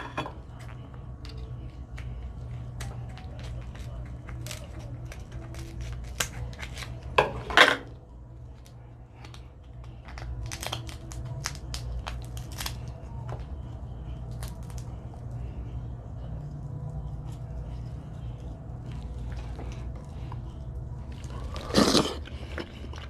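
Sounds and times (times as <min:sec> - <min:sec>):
crab shell cracking: 0:02.8 - 0:07.1, 0:10.0 - 0:13.4, 0:14.2 - 0:14.9.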